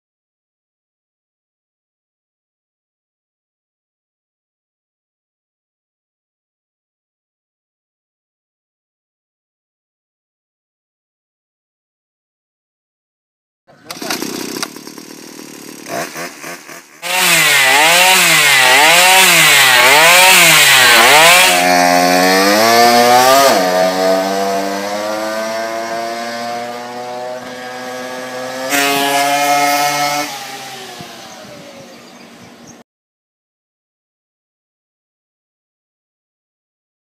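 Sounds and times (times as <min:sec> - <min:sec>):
two-stroke engine revving: 0:13.8 - 0:32.3.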